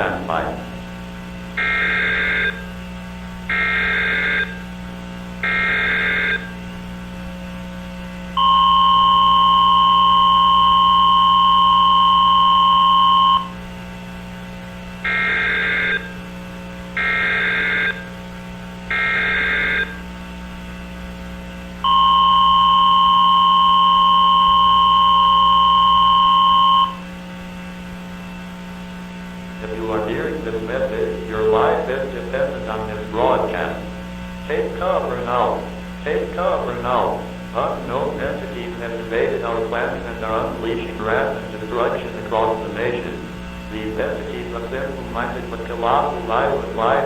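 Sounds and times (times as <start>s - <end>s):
low steady hum: 0.0s - 47.0s
two-tone attention signal: 1.6s - 2.6s, 3.5s - 4.6s, 5.4s - 6.6s, 8.4s - 13.6s, 15.0s - 16.2s, 17.0s - 18.1s, 18.9s - 20.0s, 21.8s - 27.0s
buzzy digital data bursts: 5.4s - 6.6s.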